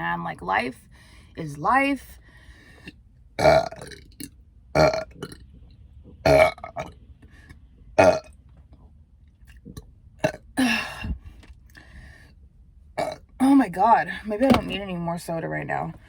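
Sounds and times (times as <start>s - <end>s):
woman burping: 3.4s - 4.0s, 4.8s - 5.4s, 6.3s - 6.8s, 10.2s - 11.2s, 13.0s - 13.2s.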